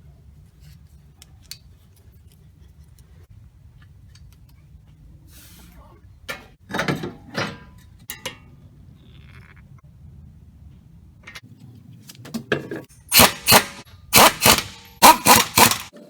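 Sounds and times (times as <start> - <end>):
tools and parts clicking: 12.8 - 16.0.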